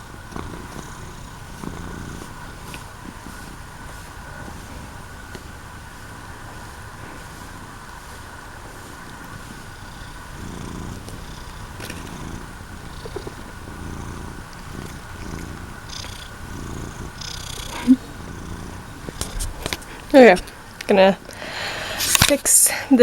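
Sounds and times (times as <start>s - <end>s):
cat purring: 0.0s - 21.4s.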